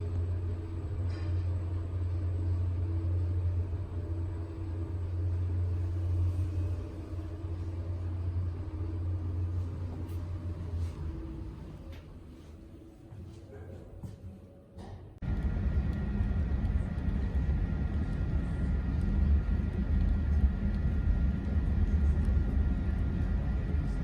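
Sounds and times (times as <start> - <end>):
vehicle rumble: 15.2 - 24.0.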